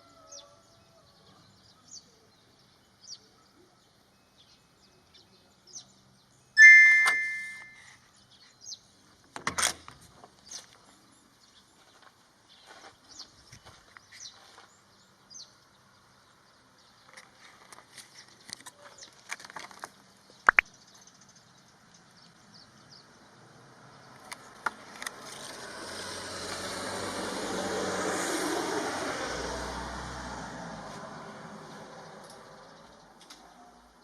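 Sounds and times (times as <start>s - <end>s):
car approaching: 22.3s - 33.2s.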